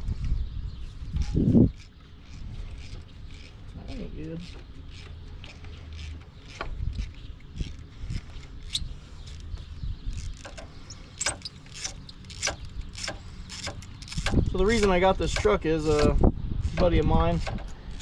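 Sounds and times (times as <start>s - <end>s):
ratchet wrench clicking: 1.8s - 3.7s, 4.4s - 9.5s, 10.1s - 18.0s.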